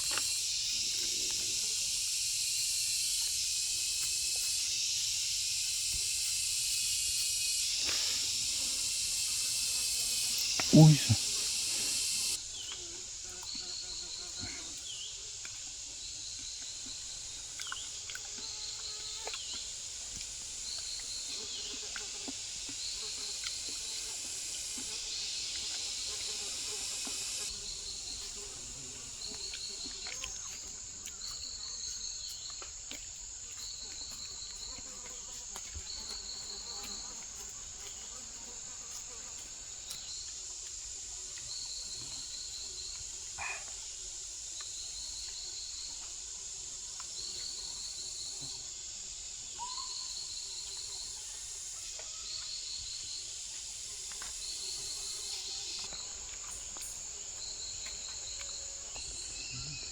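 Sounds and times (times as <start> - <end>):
insect high-pitched drone: 0.0 - 32.6, 33.5 - 59.9
insect pulsed trill: 0.0 - 32.6, 33.2 - 59.9.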